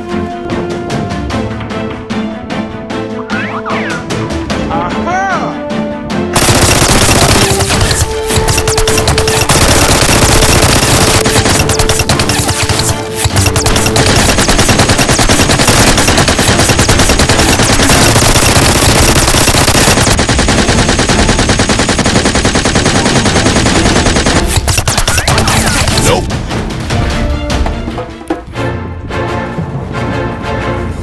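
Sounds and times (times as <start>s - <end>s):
rapid automatic gunfire: 6.4s - 26.3s.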